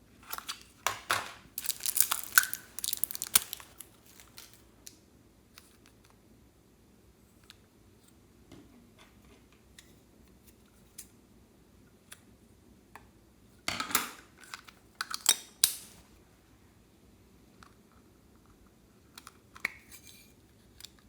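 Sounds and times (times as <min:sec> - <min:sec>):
slime crackling crunchy bursts: 0:01.4 - 0:04.7.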